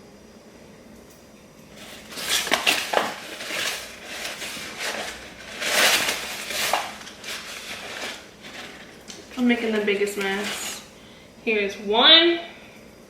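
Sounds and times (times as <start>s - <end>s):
cup scraping flour: 1.8s - 11.0s.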